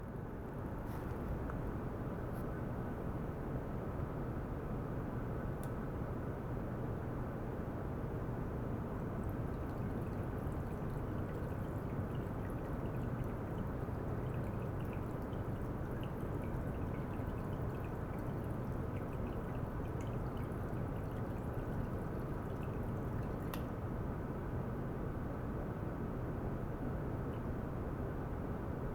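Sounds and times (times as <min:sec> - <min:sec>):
water running: 0:09.0 - 0:23.7
water dripping ticks: 0:09.0 - 0:23.8.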